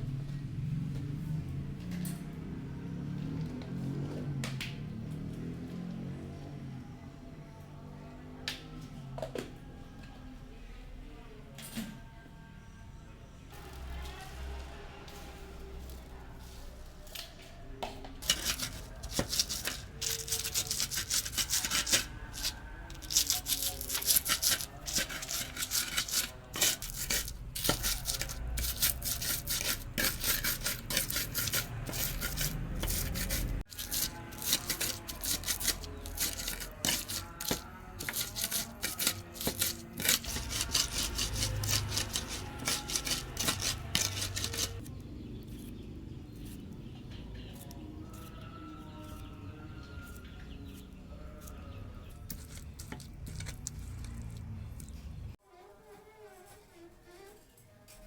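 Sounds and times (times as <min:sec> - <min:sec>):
rapid scraping strokes: 0:18.2 - 0:44.9, 0:47.4 - 0:49.4.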